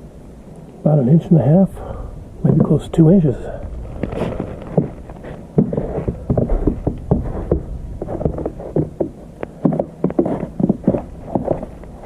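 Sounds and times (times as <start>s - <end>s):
footsteps crunching through snow: 3.8s - 12.0s.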